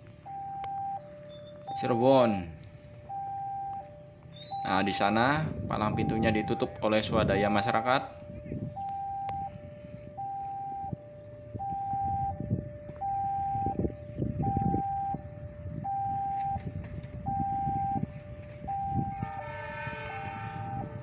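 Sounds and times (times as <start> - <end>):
level crossing two-tone siren: 0.1 - 21.0
horn-like tone: 18.7 - 21.0.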